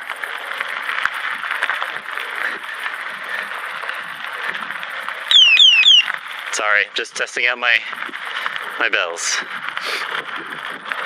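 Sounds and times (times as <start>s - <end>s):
bike tyres rolling on dirt: 0.0s - 11.0s
bike bell chirps: 5.3s - 6.1s.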